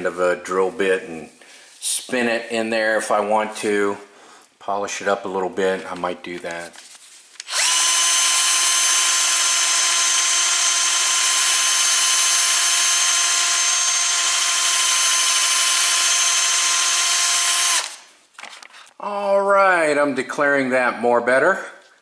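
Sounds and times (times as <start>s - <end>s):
electric drill spinning steel wool: 7.5s - 18.1s.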